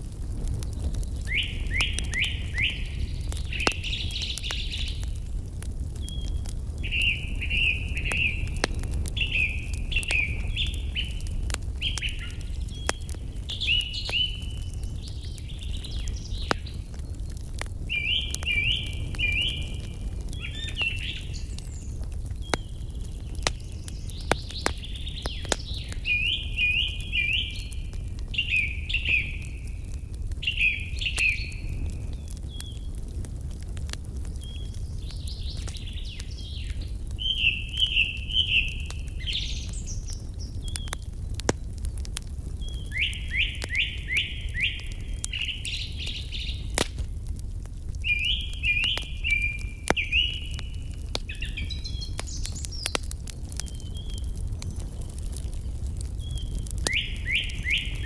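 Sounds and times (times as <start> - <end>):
wood fire crackling: 0.0 - 58.0
songbird chirping: 6.1 - 17.0, 18.0 - 31.7, 34.4 - 41.0, 42.6 - 46.7, 48.0 - 54.3, 56.3 - 58.0.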